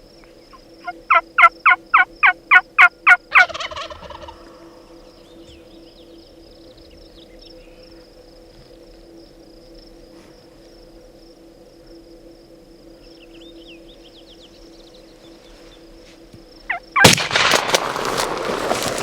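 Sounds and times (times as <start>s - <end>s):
turkey gobbling: 1.1s - 4.6s
shotgun blast with echo: 17.0s - 19.0s.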